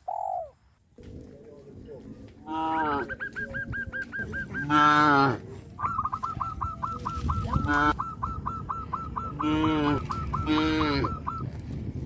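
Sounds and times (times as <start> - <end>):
cattle mooing: 4.5 - 5.5, 9.4 - 11.2.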